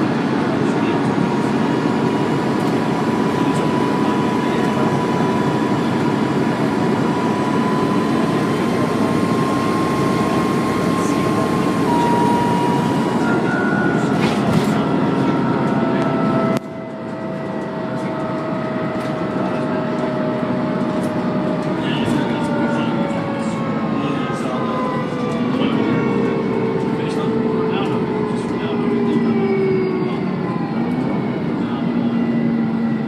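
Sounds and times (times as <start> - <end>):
bus engine running under load: 0.0 - 33.0
high turbo whine: 0.0 - 33.0.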